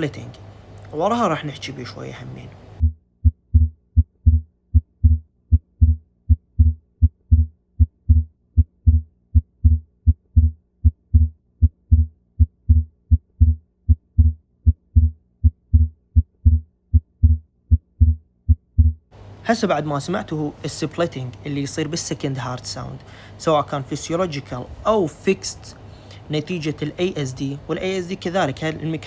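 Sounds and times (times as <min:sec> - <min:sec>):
faint steady hum: 0:00.0 - 0:29.0
heartbeat lub-dub: 0:02.8 - 0:19.1.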